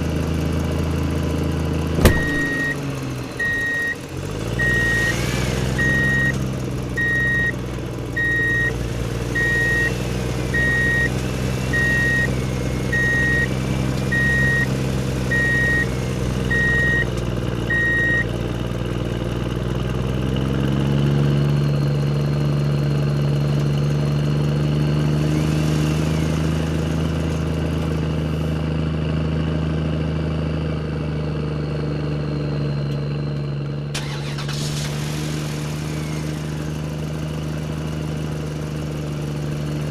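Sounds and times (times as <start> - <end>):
reversing beeper: 2.0 - 4.0, 4.6 - 6.4, 7.0 - 7.6, 8.2 - 8.8, 9.4 - 15.9, 16.5 - 17.1, 17.7 - 18.3
toy truck engine humming: 2.2 - 18.8.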